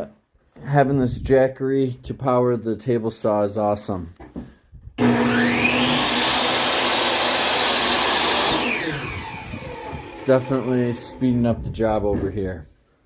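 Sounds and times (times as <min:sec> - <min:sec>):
table saw motor whining: 0:05.0 - 0:11.5.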